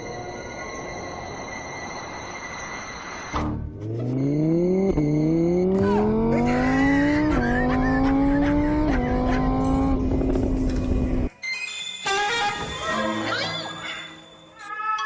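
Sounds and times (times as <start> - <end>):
car engine accelerating: 3.4 - 11.3.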